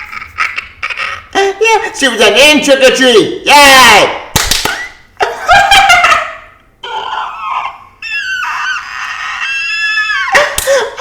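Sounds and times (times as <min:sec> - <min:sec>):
person squealing with delight: 0:06.8 - 0:11.0.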